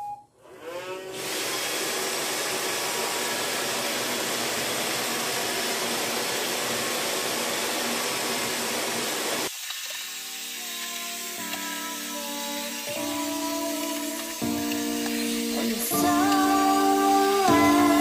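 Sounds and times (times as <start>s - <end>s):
robot vacuum whirring: 9.2s - 18.0s.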